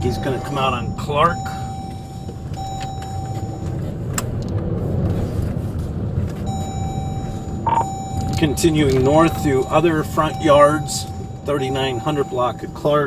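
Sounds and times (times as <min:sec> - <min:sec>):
steady high tone: 0:00.0 - 0:03.8, 0:06.5 - 0:13.0
car engine and road rumble: 0:00.0 - 0:13.0.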